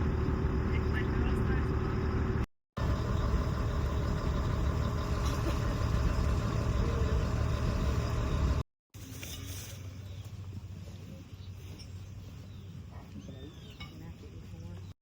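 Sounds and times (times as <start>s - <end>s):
low engine rumble: 0.0s - 8.6s.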